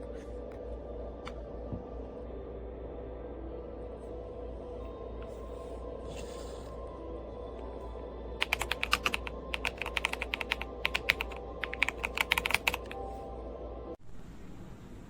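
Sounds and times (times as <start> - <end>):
mechanical keyboard key clicks: 8.4 - 13.0.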